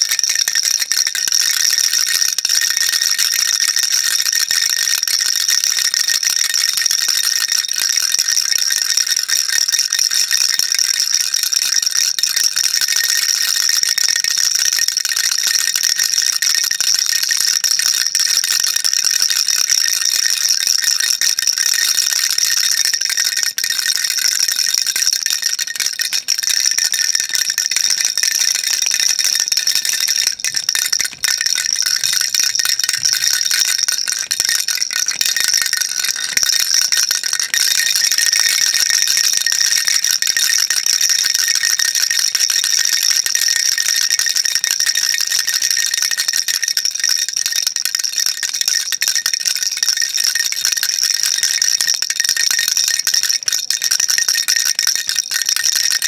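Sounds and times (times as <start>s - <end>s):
baby rattle shaking: 18.0s - 42.9s.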